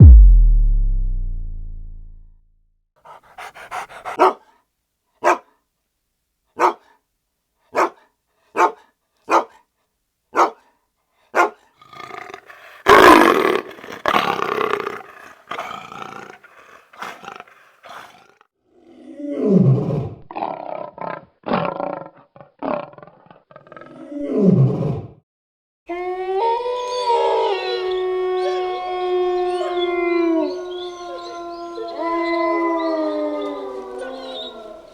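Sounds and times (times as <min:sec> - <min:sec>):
low tone: 0:00.0 - 0:02.4
dog growling: 0:03.1 - 0:04.4, 0:11.8 - 0:18.4
dog howling: 0:03.1 - 0:04.4, 0:25.9 - 0:34.9
dog barking: 0:03.1 - 0:04.6, 0:05.2 - 0:05.6, 0:06.6 - 0:07.0, 0:07.7 - 0:09.6, 0:10.3 - 0:10.7, 0:11.3 - 0:11.7.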